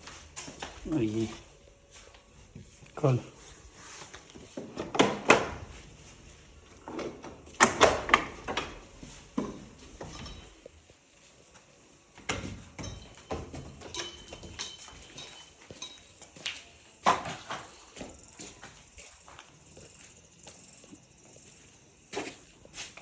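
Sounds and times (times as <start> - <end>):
wooden door knocks and clicks: 7.6 - 8.8.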